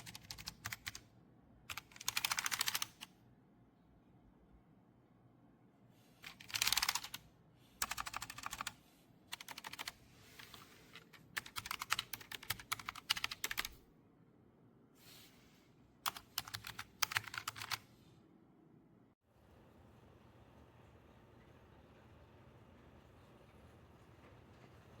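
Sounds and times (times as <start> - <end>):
mechanical keyboard typing: 0.0 - 1.0, 1.7 - 3.1, 6.2 - 7.2, 7.8 - 13.8, 16.1 - 17.8.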